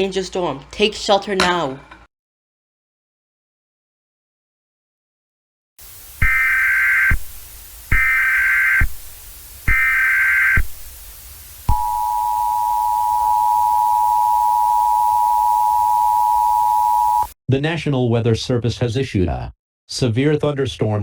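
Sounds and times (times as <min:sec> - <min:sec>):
warbling data tones: 0:06.0 - 0:17.3
two-pitch attention tone: 0:11.7 - 0:17.3.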